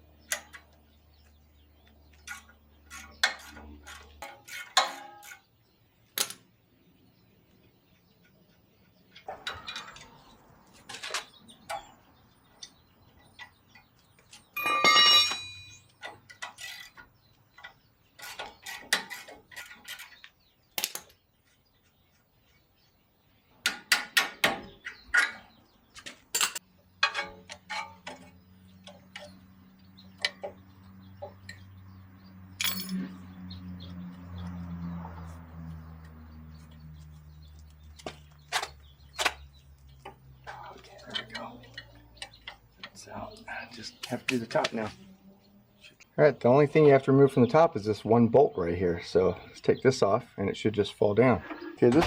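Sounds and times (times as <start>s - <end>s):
loud ringing metal clank: 14.6s - 15.9s
metal tools clicking and clinking: 14.6s - 17.0s, 32.6s - 33.1s.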